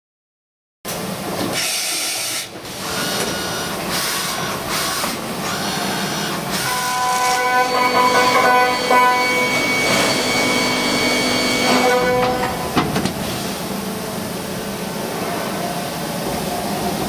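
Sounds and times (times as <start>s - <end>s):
machining centre cutting hiss: 1.5s - 14.0s.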